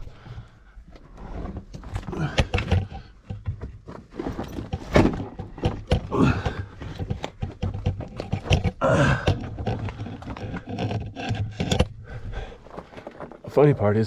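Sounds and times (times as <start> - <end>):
body scraping on rough rock: 1.1 - 14.0
person grunting: 6.1 - 6.7, 8.8 - 9.4.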